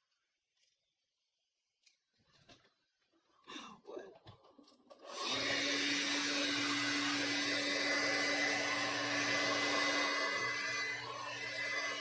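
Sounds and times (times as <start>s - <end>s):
hair dryer blowing: 5.0s - 12.0s.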